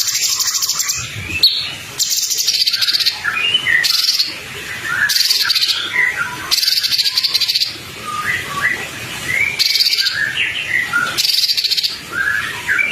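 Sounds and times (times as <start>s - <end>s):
bird whistled phrases: 0.0s - 12.9s
high buzzy bird trills: 0.0s - 12.9s.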